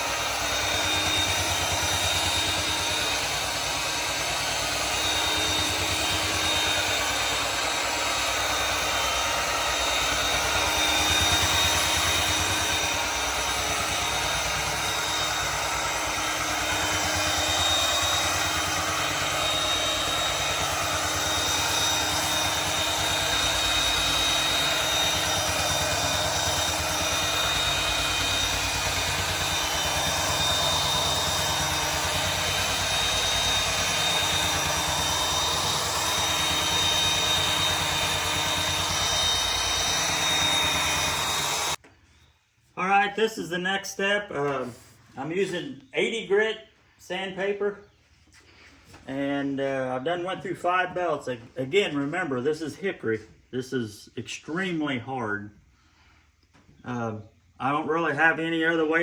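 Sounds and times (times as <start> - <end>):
belt sander on wood: 0.0 - 41.8.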